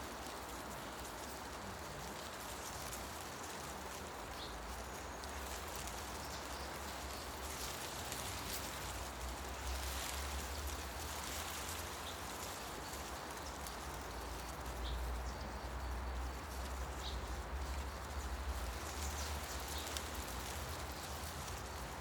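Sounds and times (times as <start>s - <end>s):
wind rustling tree leaves: 0.0s - 22.0s.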